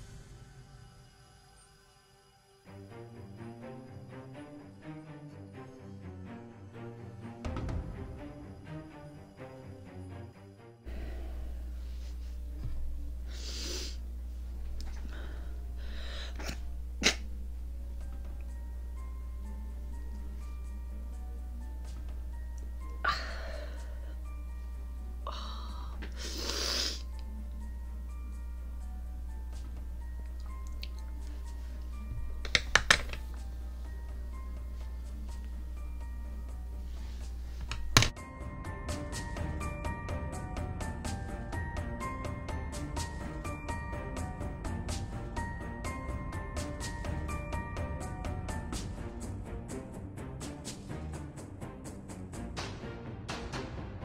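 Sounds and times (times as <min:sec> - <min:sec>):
steady low hum: 0:10.9 - 0:32.5, 0:33.1 - 0:49.6
background music with quick beat: 0:37.1 - 0:54.0.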